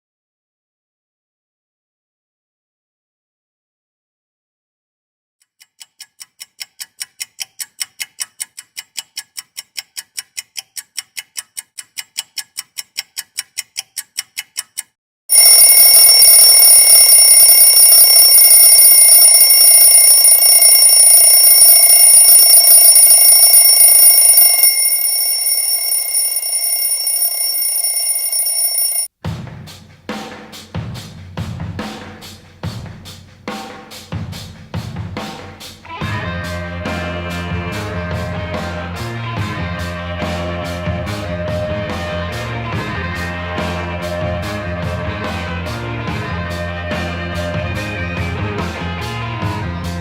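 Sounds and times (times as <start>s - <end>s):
clock ticking: 5.6s - 29.1s
alarm clock ringing: 15.3s - 29.1s.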